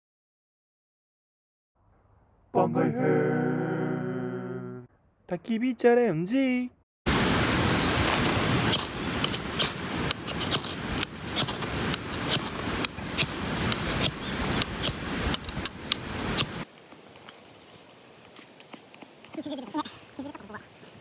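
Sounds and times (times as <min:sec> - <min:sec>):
wood fire crackling: 0:07.1 - 0:19.7
steady rushing hiss: 0:07.1 - 0:21.0.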